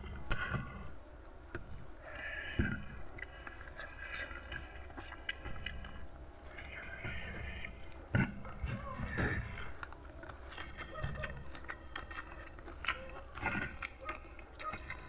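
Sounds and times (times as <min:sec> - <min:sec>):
person chewing food: 0:00.0 - 0:15.0.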